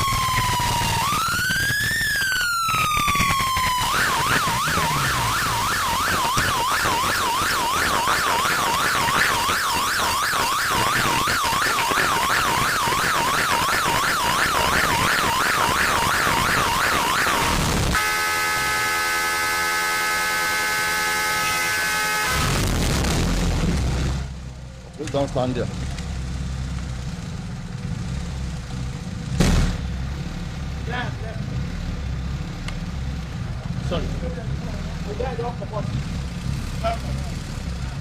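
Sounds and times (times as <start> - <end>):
vehicle siren wail and yelp: 0.0 - 22.6.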